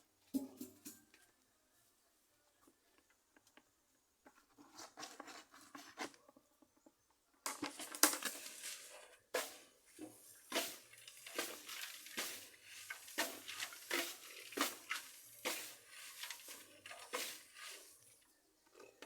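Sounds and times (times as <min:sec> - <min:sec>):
grass and bran rustling: 0:07.7 - 0:18.2
scraping strokes: 0:07.9 - 0:18.2.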